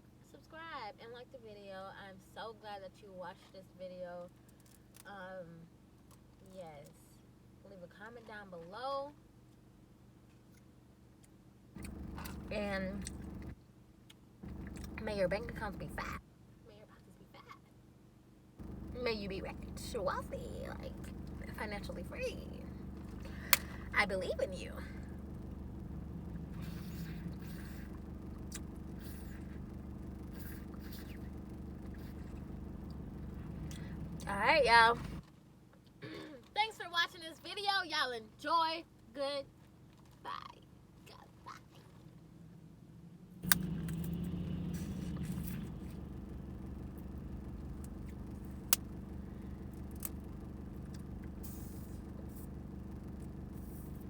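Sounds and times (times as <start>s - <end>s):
low background hum: 0.0s - 54.0s
car engine idling: 11.8s - 13.6s, 14.4s - 16.2s, 18.6s - 35.2s, 41.8s - 54.0s
sharp click: 43.4s - 44.2s.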